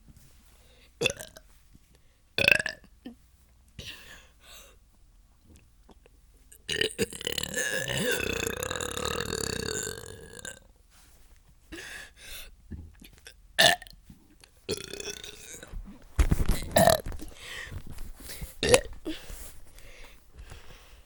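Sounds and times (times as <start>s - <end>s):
person burping: 6.7s - 10.6s, 13.6s - 13.9s, 14.7s - 15.7s, 16.6s - 17.0s, 18.6s - 19.2s.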